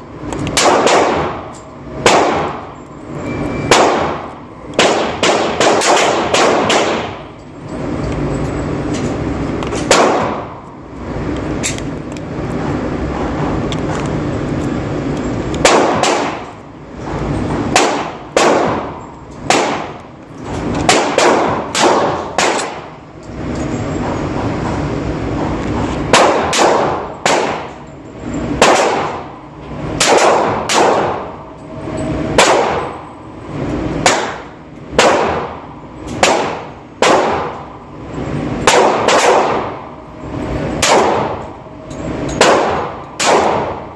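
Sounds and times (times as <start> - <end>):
pistol shots with ringing echo: 0.5 - 2.8, 3.6 - 7.4, 9.8 - 10.6, 15.6 - 16.7, 17.6 - 20.0, 20.8 - 23.0, 26.1 - 27.9, 28.5 - 31.6, 32.3 - 33.1, 34.0 - 37.9, 38.6 - 40.0, 40.7 - 43.9.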